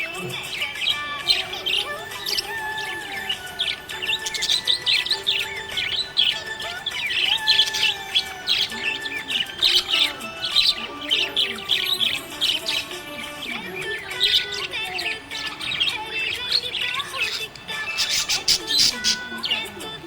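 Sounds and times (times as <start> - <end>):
background music: 0.0 - 20.0
budgies chirping and warbling: 0.0 - 20.0.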